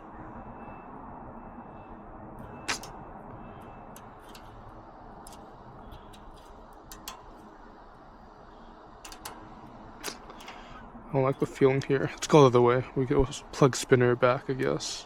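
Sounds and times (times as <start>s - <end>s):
lock pick clicking in lock: 6.1s - 7.4s, 9.0s - 9.4s.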